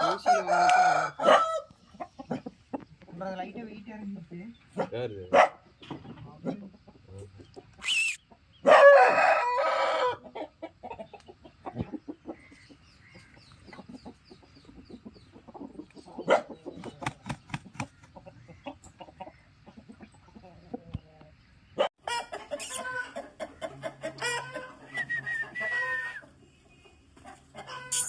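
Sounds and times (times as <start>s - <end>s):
rooster crowing: 0.0s - 1.7s, 8.6s - 10.2s
soft clucking: 1.7s - 3.4s, 5.7s - 8.6s, 10.2s - 28.0s
short high squawk: 7.8s - 8.2s.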